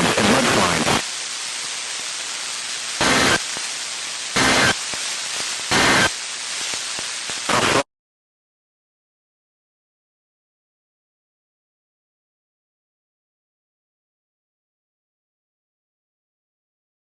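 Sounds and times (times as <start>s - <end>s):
buzzy data bursts: 0.0s - 7.8s
radio static hiss: 0.0s - 7.9s.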